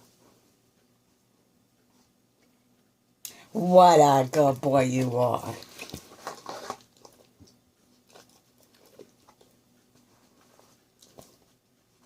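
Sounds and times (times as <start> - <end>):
faint soft clicks and smacks: 0.1 - 3.5.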